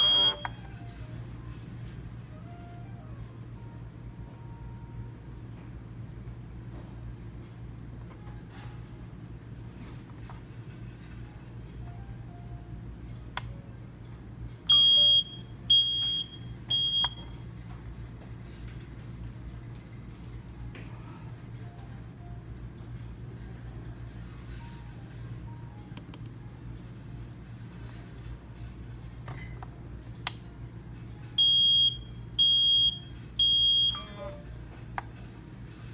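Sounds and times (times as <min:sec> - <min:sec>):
smoke detector beeps: 0:00.0 - 0:00.6, 0:14.7 - 0:17.3, 0:31.4 - 0:34.2
click: 0:13.4 - 0:14.1, 0:30.2 - 0:30.4.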